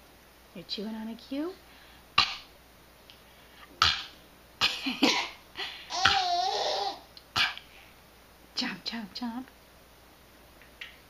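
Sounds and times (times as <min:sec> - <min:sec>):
person coughing: 0:03.8 - 0:06.2.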